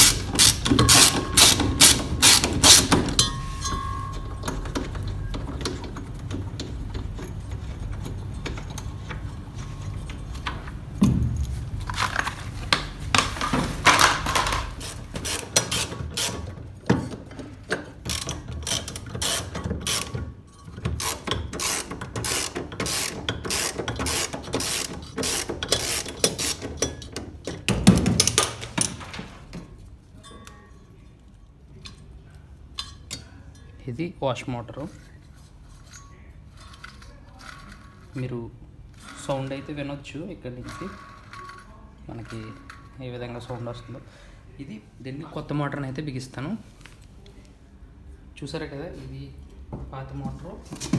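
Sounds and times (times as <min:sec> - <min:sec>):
ratchet wrench clicking: 0:00.0 - 0:03.3, 0:18.1 - 0:20.2, 0:21.0 - 0:27.0.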